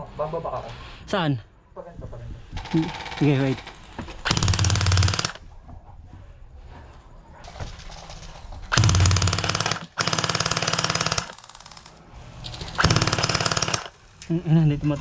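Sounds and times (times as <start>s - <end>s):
gel blaster rapid firing: 4.3s - 5.4s, 8.7s - 11.8s, 12.8s - 13.9s.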